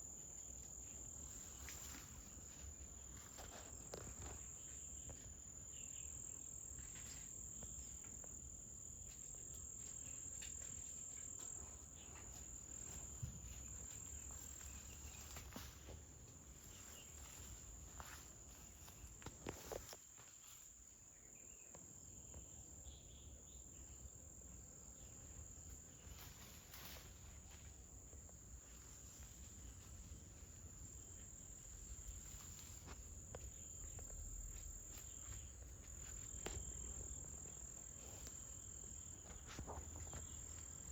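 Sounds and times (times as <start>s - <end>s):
insects chirring: 0.0s - 40.9s.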